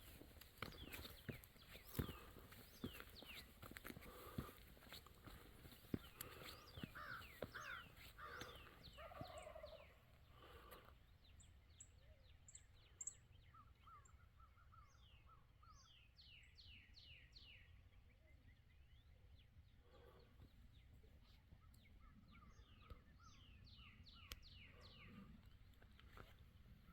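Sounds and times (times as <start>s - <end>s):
bird trill: 6.0s - 10.0s.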